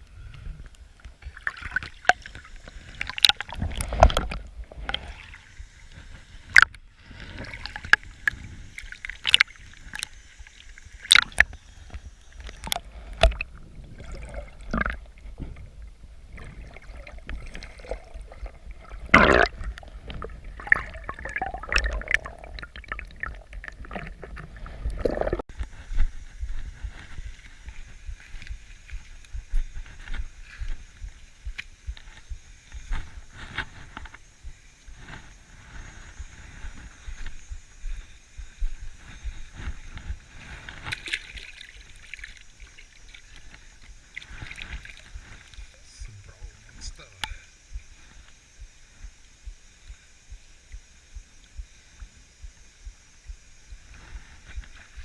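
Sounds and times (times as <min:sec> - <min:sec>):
water splashing and sloshing: 0:01.0 - 0:34.2, 0:38.8 - 0:47.2.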